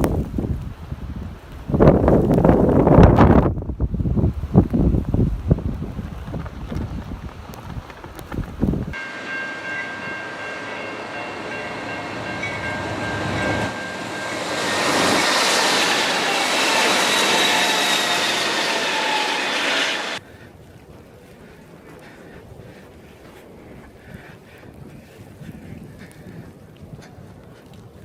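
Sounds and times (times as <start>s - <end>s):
steady high tones: 9.0s - 20.2s
train rushing past: 9.0s - 20.2s.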